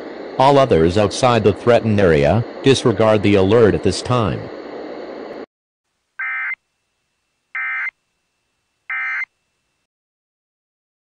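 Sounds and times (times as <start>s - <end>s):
digital data tone bursts: 6.2s - 6.6s, 7.6s - 7.9s, 8.9s - 9.3s.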